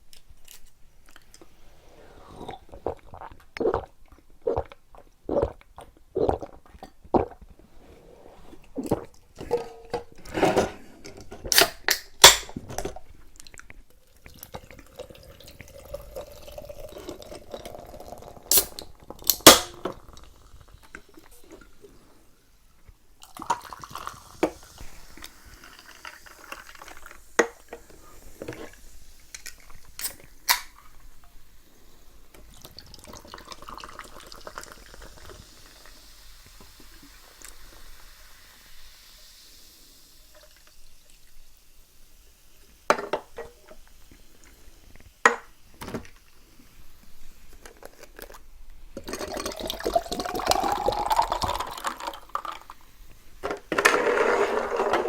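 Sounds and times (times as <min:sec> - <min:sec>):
drink poured into glass: 0:14.2 - 0:21.6, 0:23.2 - 0:30.6, 0:49.0 - 0:52.9.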